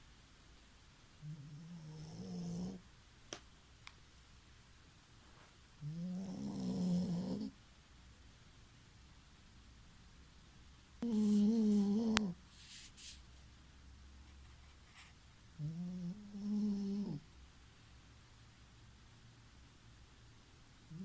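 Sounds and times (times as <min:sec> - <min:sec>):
dog snoring: 0:01.2 - 0:02.8, 0:05.8 - 0:07.6, 0:11.0 - 0:12.4, 0:15.6 - 0:17.2.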